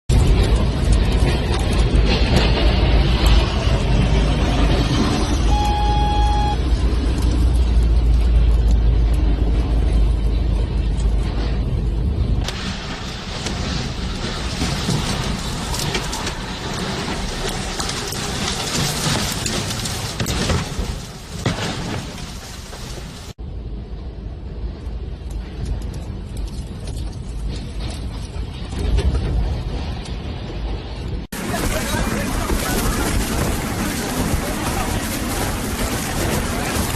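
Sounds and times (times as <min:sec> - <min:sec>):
wind buffeting microphone: 0:23.5 - 0:36.9.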